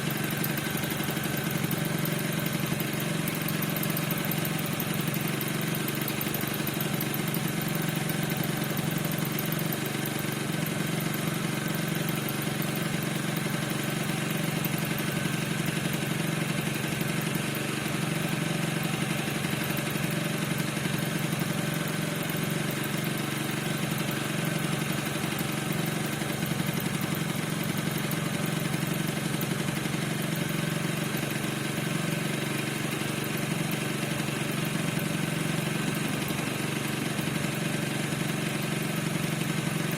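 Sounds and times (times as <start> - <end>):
scooter engine idling: 0.0 - 39.9.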